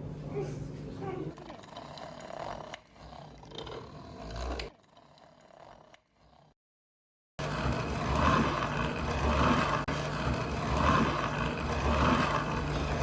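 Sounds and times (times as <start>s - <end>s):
machine running with low hum: 7.4s - 13.0s.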